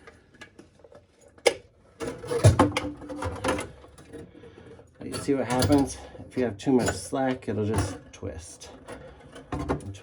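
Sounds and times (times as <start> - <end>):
auger cable clicking and rattling: 5.0 - 10.0.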